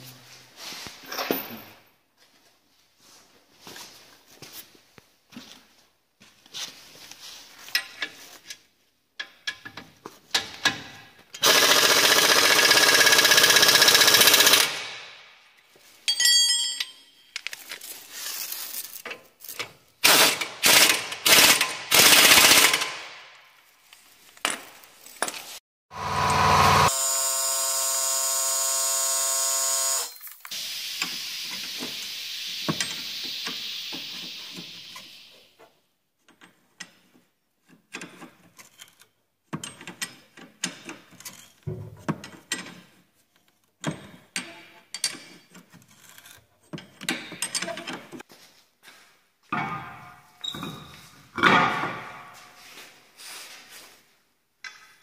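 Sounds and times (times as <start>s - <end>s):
impact wrench hammering: 11.4s - 15.1s, 25.9s - 30.1s.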